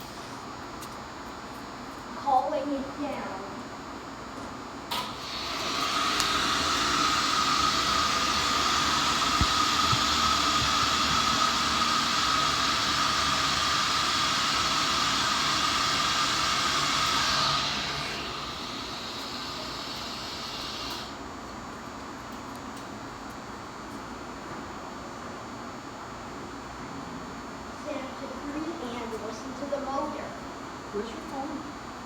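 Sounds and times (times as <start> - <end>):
hydraulic elevator hiss and whine: 0.0 - 1.4, 4.7 - 21.4.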